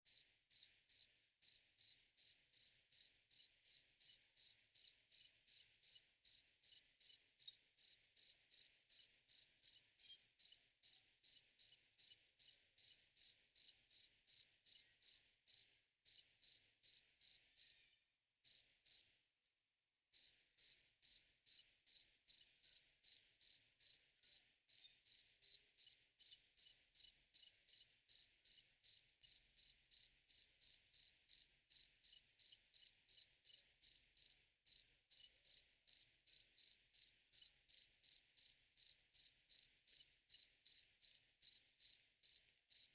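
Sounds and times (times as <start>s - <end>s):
cricket chirping: 0.1s - 17.8s, 18.5s - 19.1s, 20.2s - 42.9s.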